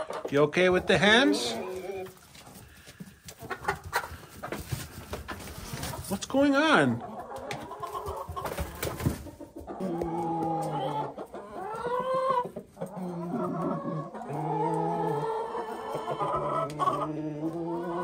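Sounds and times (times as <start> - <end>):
chickens clucking and squawking: 0.0 - 18.0
long drawn-out chicken calls: 7.1 - 18.0.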